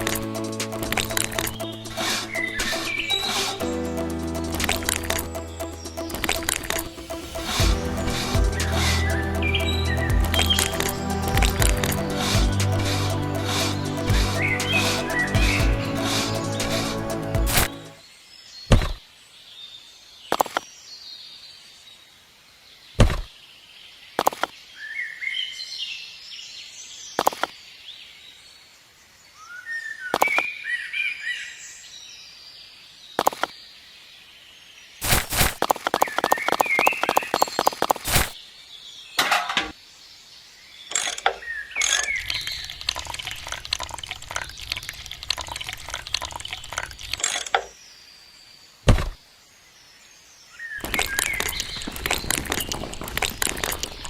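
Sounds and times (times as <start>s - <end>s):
fast ticking: 0.0s - 17.8s
birds chirping: 0.0s - 18.0s, 50.5s - 54.0s
low hum: 0.0s - 18.0s.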